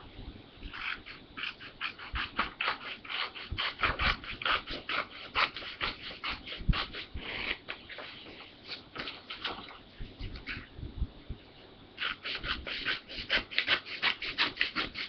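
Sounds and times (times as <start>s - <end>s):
paper being cut by hand: 0.7s - 9.6s, 12.0s - 15.0s.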